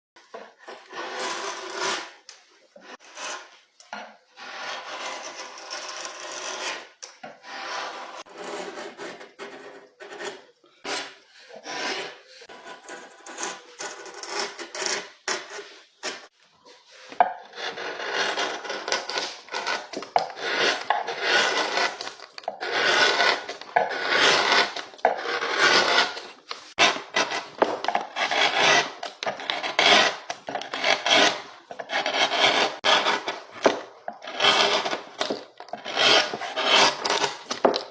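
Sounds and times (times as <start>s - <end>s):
hand tool rasping wood: 17.1s - 37.9s.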